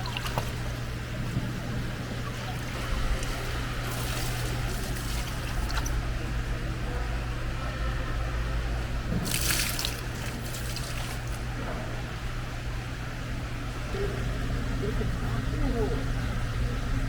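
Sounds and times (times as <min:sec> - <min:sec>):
water splash: 0:00.0 - 0:00.7, 0:02.3 - 0:06.0, 0:09.2 - 0:11.5
water trickling and sloshing: 0:00.0 - 0:06.2, 0:09.1 - 0:11.8
low engine hum: 0:00.0 - 0:17.0.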